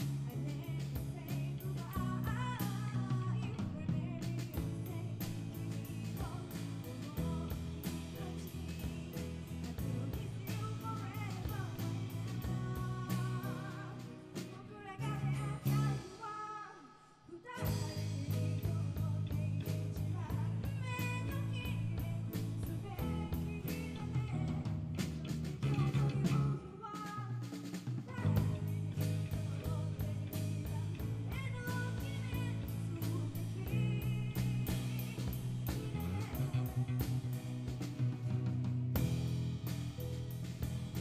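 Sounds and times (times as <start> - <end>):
rock band playing live: 0.0 - 16.1, 17.6 - 41.0
drum kit steady beat: 0.0 - 16.3, 17.6 - 41.0.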